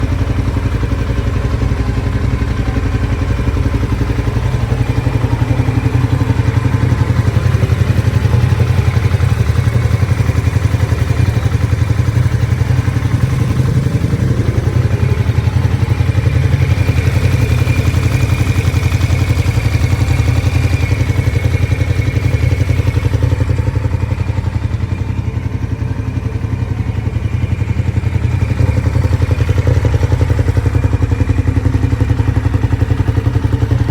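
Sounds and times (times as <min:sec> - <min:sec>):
motorcycle engine idling: 0:00.0 - 0:33.9.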